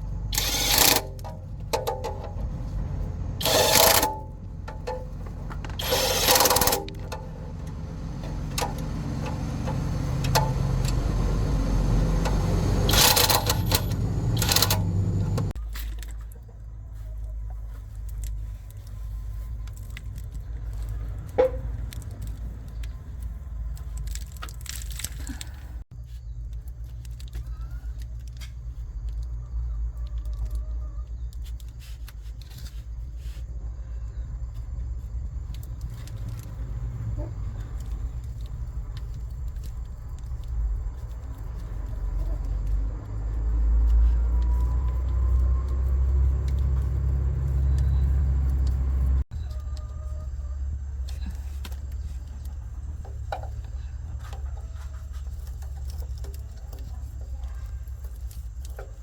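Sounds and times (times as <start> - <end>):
metallic rattles: 0.0 - 15.5
diesel truck engine revving and idling: 0.0 - 15.6, 34.3 - 49.3.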